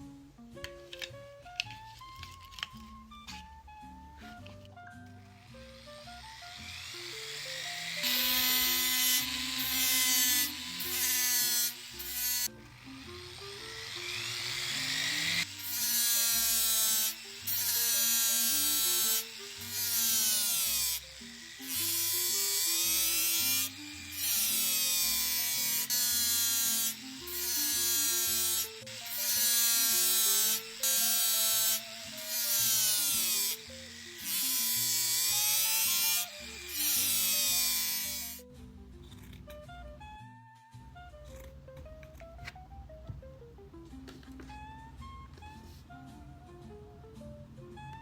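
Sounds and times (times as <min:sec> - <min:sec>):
background music: 0:00.0 - 0:48.0
rotary power tool whining: 0:05.1 - 0:38.4.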